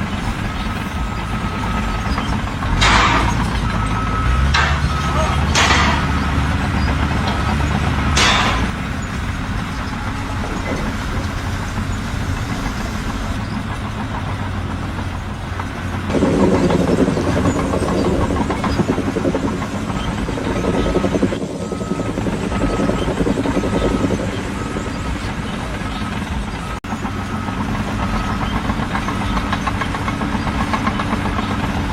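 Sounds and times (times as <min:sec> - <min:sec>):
heavy machine engine running: 0:00.0 - 0:31.9
short beeps: 0:03.8 - 0:06.2.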